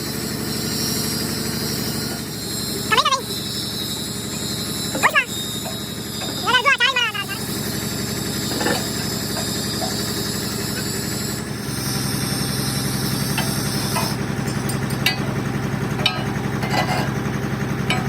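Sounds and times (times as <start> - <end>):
engine running: 0.0 - 18.0
hiss: 7.5 - 14.2
tools clinking on metal: 8.5 - 10.6, 13.3 - 17.2.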